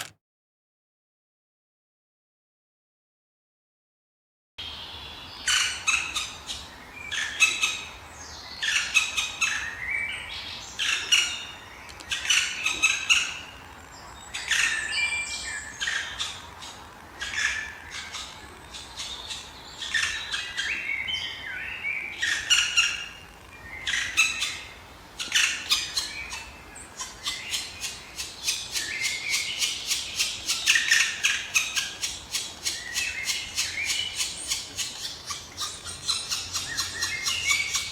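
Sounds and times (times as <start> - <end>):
woodpeckers squawking calls: 22.2 - 37.9.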